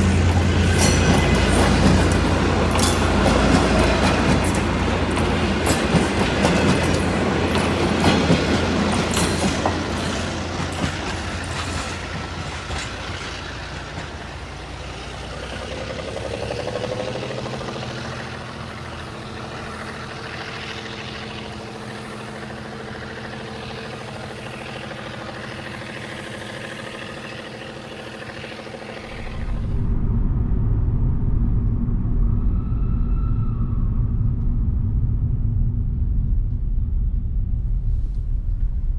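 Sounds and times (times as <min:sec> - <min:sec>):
steady engine hum: 0:00.0 - 0:38.9
train rolling past: 0:00.0 - 0:38.9.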